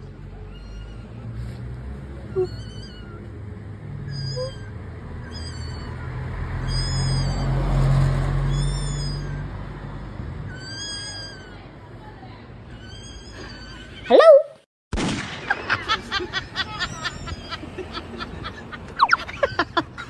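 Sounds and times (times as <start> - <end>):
short high-pitched arched call: 4.1 - 6.0, 6.6 - 7.6, 8.5 - 9.5, 10.5 - 11.6.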